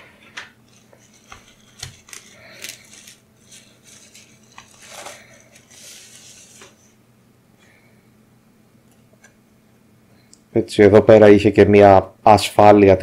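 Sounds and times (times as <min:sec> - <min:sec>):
packaging rustling: 0:00.6 - 0:07.0.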